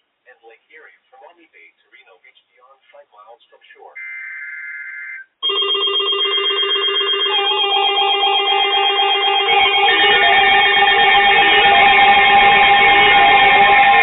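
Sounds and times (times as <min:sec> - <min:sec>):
weather radio alarm tones: 0:04.0 - 0:14.0.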